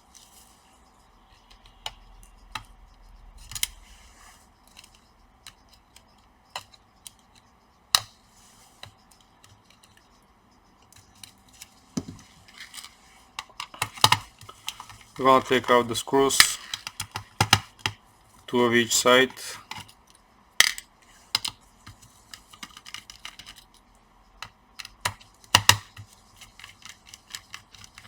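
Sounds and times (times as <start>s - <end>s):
cable connectors clicking and scratching: 24.4s - 28.0s.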